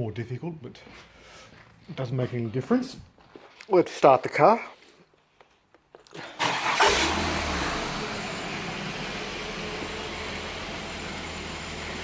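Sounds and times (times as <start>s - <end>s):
car starter cranking: 6.3s - 9.1s
car engine idling: 6.4s - 12.0s.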